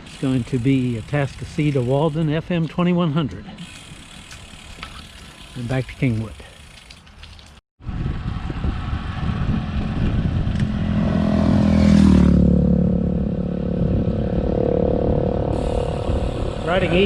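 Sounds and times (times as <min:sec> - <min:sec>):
road rumble: 0:00.0 - 0:17.0
wind noise: 0:07.8 - 0:17.0
vehicle engine passing by: 0:08.1 - 0:17.0.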